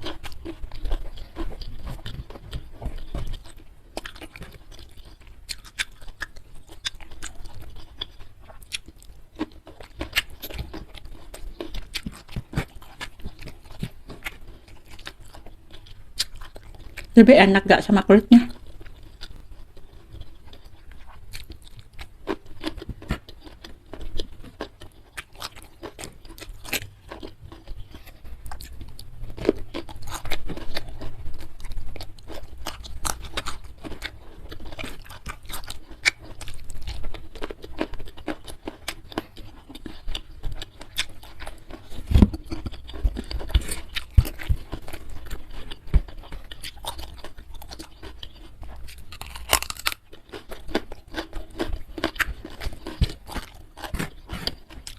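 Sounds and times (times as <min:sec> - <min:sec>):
chewing and crunching food: 0:00.0 - 0:54.9
mouth sounds: 0:17.2 - 0:18.6.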